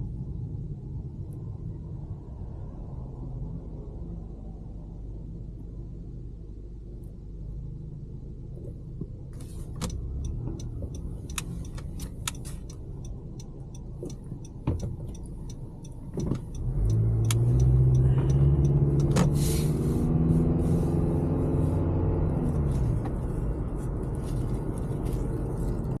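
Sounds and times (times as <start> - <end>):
vehicle engine rumbling: 0.0 - 26.0
scattered clicks: 9.8 - 19.3.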